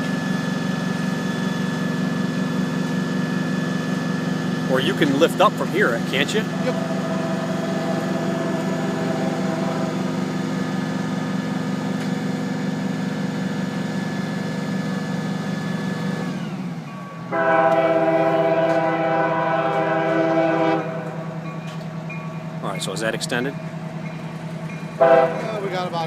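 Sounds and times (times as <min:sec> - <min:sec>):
truck engine and hydraulics: 0:00.0 - 0:26.0
loud steady horn tone: 0:04.7 - 0:11.4, 0:17.3 - 0:21.4, 0:25.0 - 0:25.7.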